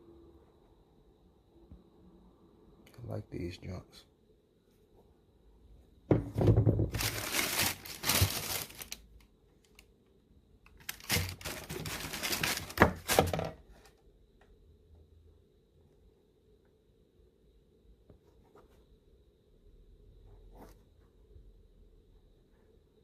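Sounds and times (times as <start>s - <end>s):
paper crinkling and rustling: 6.9s - 9.0s, 10.8s - 13.6s.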